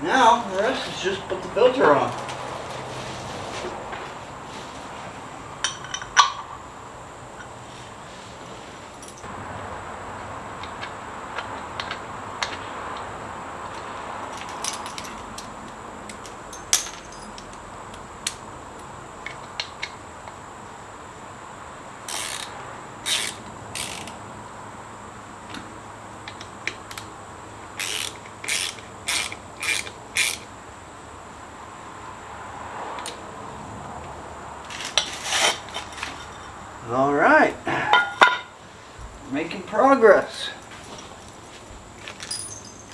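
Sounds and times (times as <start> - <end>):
small metal clinks: 8.4 - 9.3, 14.3 - 17.6, 40.2 - 42.9
hand ratchet clicking: 22.1 - 24.2, 27.8 - 30.5.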